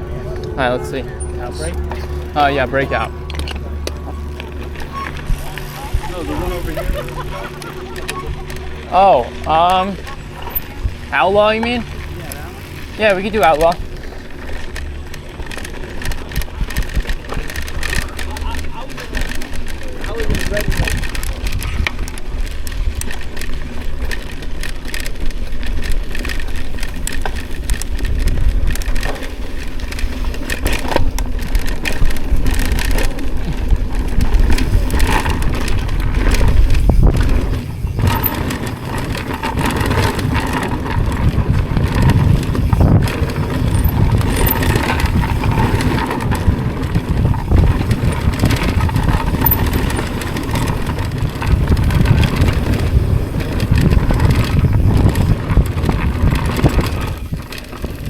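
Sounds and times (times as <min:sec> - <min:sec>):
bike rattling over bumps: 0:00.0 - 0:58.0
tyres rumbling on rough ground: 0:00.0 - 0:58.0.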